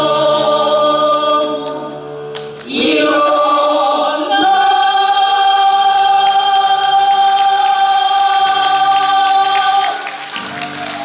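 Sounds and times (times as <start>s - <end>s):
applause: 6.6s - 11.0s.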